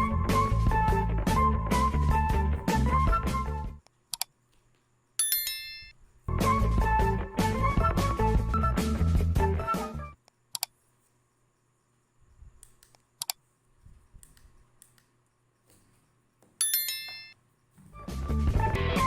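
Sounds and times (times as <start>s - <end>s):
background music: 0.0s - 3.8s, 6.3s - 10.2s, 17.9s - 19.0s
sharp clicks: 3.8s - 4.3s, 10.2s - 10.8s, 12.6s - 13.4s, 14.2s - 15.8s.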